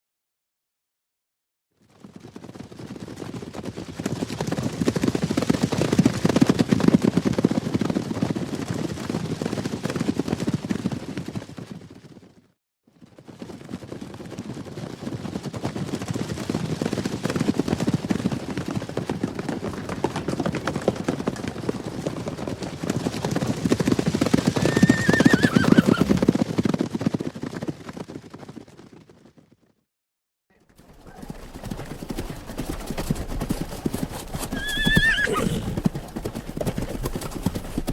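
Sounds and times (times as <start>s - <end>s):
horses galloping: 1.8s - 29.8s, 30.5s - 37.9s
horse whinnying: 24.6s - 26.3s, 34.5s - 35.9s.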